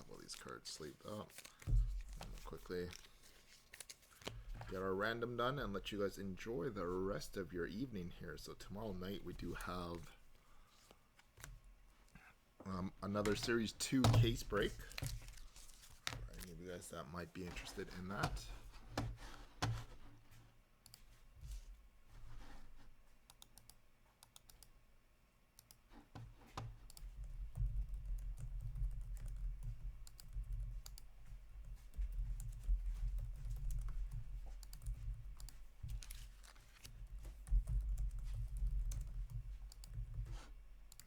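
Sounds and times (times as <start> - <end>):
typing on computer keyboard: 26.6 - 40.3.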